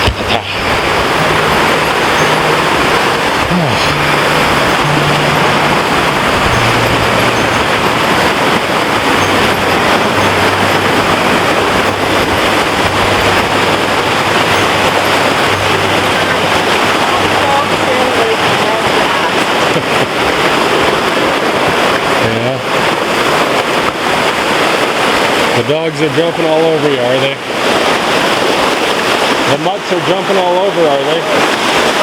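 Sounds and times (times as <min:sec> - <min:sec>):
rushing creek water: 0:00.0 - 0:32.0.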